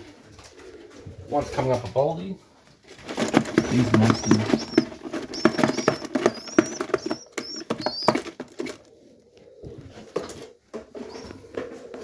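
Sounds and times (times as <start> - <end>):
rustling: 2.6 - 9.2
pigeon squabs squeaking: 3.0 - 8.9, 11.0 - 11.5.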